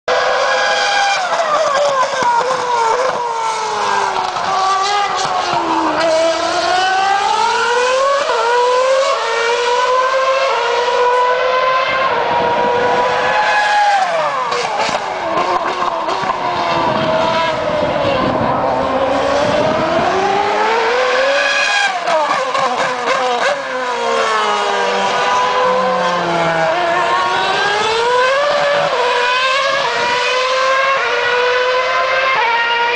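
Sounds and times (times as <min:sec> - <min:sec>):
racing car engine at high revs: 0:00.1 - 0:32.9.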